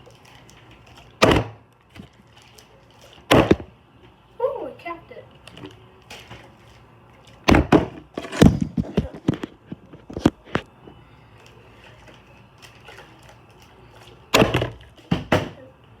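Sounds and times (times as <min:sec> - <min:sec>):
plastic bottle landing with thuds: 0:01.2 - 0:01.6, 0:03.3 - 0:03.7, 0:07.4 - 0:09.4, 0:14.3 - 0:15.6.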